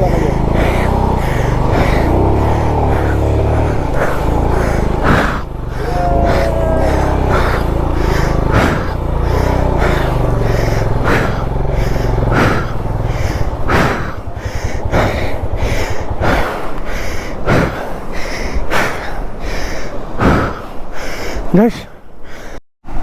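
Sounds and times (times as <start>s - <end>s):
low steady rumble: 0.0s - 18.2s
man panting hard: 0.0s - 22.6s.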